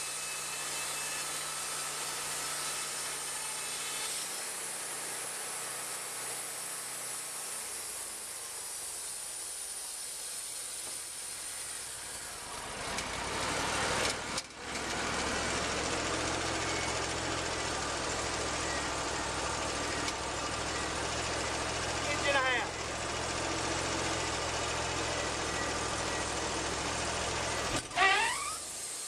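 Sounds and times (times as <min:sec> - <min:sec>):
band sawmill running: 0:00.0 - 0:29.0
engine hum: 0:11.1 - 0:28.6.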